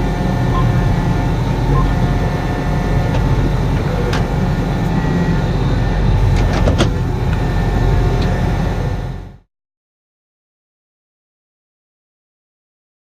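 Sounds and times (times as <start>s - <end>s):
tractor engine running: 0.0s - 9.5s.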